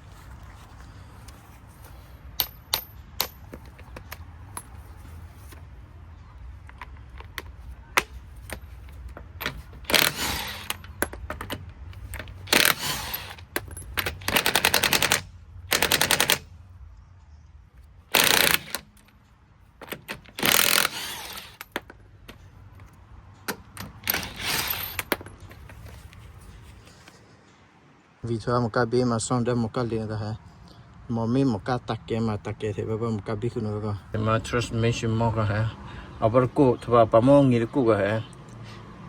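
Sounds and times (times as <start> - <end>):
impact wrench hammering: 2.4 - 4.7, 7.3 - 16.5, 18.1 - 19.1, 19.8 - 21.9
small metal clicks: 6.6 - 16.5, 18.1 - 26.2.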